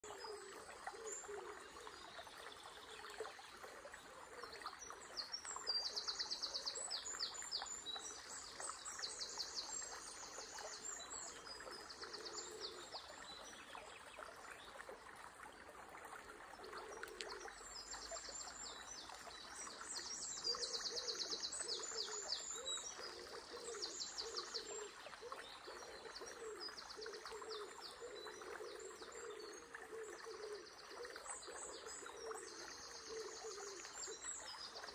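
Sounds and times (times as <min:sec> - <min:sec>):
river water running: 0:00.0 - 0:34.9
songbirds trilling: 0:16.7 - 0:34.9.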